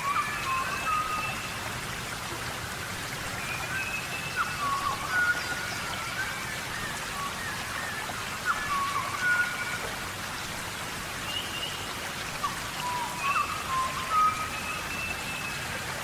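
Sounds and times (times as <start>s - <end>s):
steady rain falling: 0.0s - 16.0s
short high whistling calls: 12.4s - 15.5s.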